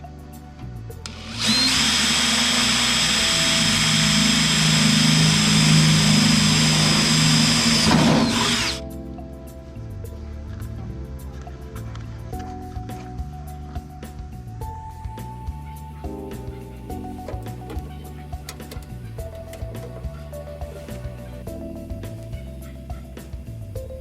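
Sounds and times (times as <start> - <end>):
power drill running: 1.1 - 8.8.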